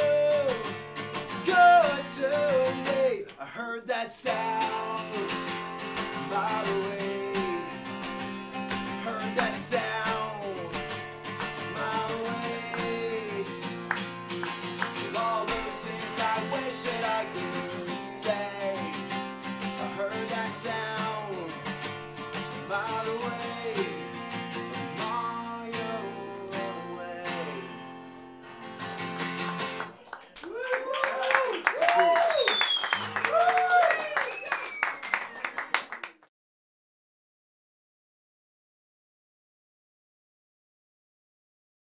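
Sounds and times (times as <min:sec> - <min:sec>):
acoustic guitar strumming: 0:00.0 - 0:03.2, 0:04.3 - 0:29.8
man singing: 0:00.0 - 0:13.9, 0:14.8 - 0:27.9.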